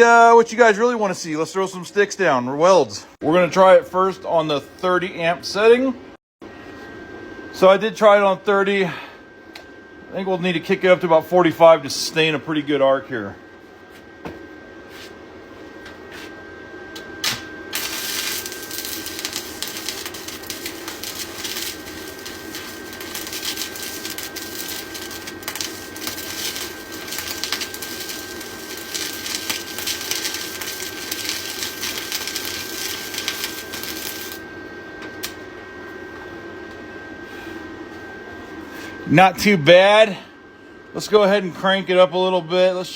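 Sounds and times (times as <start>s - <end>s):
steady high whine: 15.6s - 42.9s
welding arc crackling: 17.2s - 34.4s.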